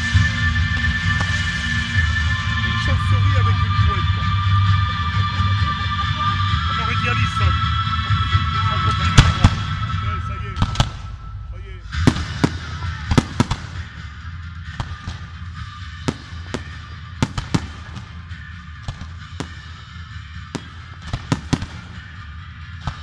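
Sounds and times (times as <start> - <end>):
fireworks bangs and cracks: 0.0 - 2.1, 8.8 - 11.1, 11.9 - 14.0, 14.7 - 19.8, 20.4 - 22.2, 22.8 - 23.0
low rumble: 0.0 - 23.0.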